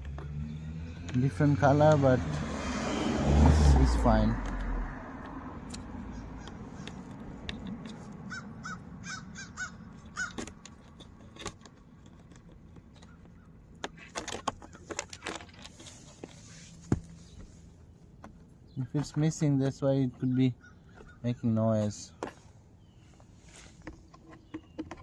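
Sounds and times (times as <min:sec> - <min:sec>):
bird calling: 0:05.8 - 0:07.1, 0:08.2 - 0:10.5, 0:18.6 - 0:23.8.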